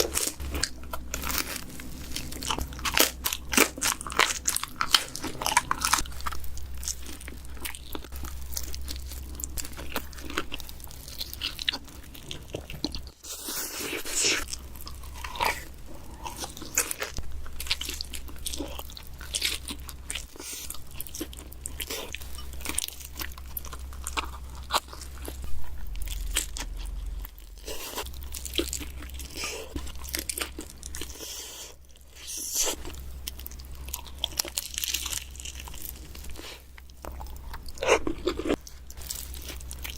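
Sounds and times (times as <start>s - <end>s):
low hum: 0.0s - 12.6s, 14.4s - 31.2s
pizza crust crunching: 0.0s - 39.9s
wet chewing: 0.0s - 39.9s.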